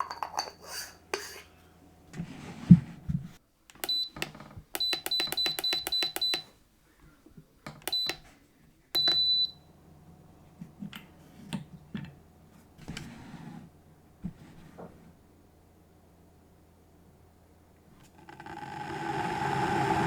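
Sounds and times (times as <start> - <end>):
electric kettle beeping: 3.8 - 6.5, 7.8 - 8.2, 9.0 - 10.1, 18.0 - 20.0.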